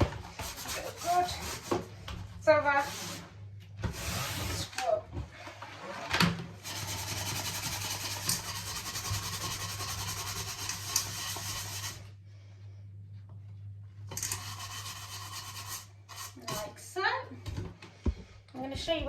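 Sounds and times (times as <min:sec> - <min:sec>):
brush scrubbing shower hose: 0:00.2 - 0:01.8, 0:02.4 - 0:04.8, 0:06.6 - 0:12.1, 0:14.1 - 0:16.8.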